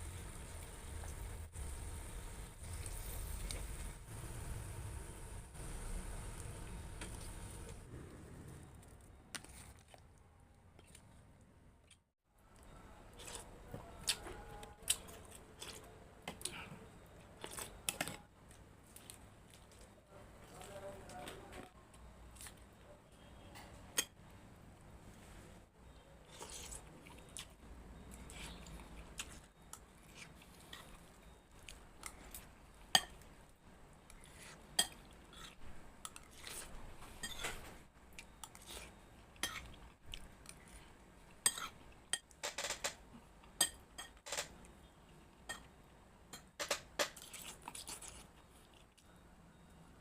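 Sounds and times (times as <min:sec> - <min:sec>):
chewing: 0:12.6 - 0:21.4, 0:26.2 - 0:33.3, 0:34.0 - 0:42.3, 0:47.1 - 0:49.2
spoon scraping a plate: 0:36.4 - 0:37.8.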